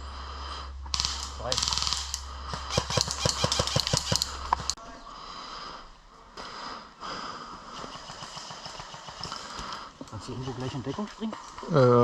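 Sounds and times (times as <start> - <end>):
airsoft gun clicks: 0.9 - 4.8
heavy breathing and sniffing: 9.2 - 10.1.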